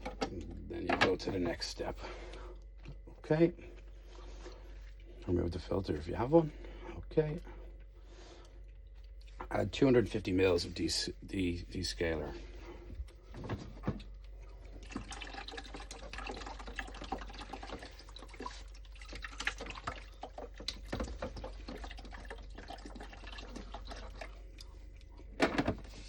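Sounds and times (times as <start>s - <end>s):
liquid pouring into tank: 13.4s - 26.0s.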